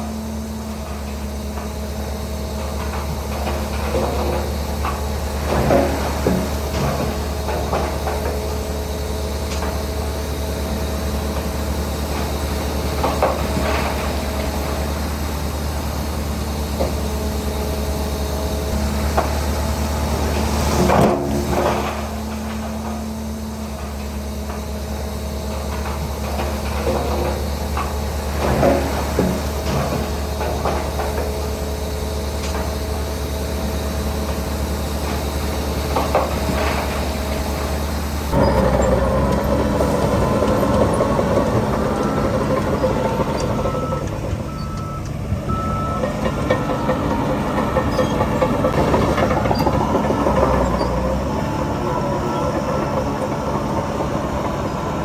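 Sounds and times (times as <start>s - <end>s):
diesel machinery droning: 0.0s - 55.0s.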